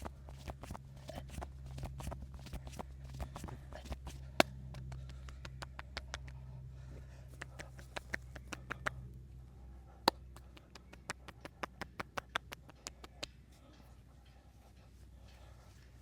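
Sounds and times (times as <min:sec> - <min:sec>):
low steady hum: 0:00.0 - 0:16.0
hands slapping on body: 0:00.3 - 0:06.4, 0:07.4 - 0:09.0.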